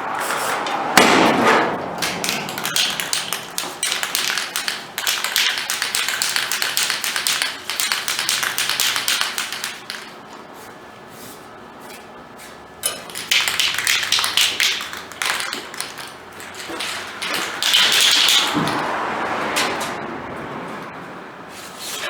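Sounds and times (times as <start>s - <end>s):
hand tool tapping on metal: 2.0s - 10.2s.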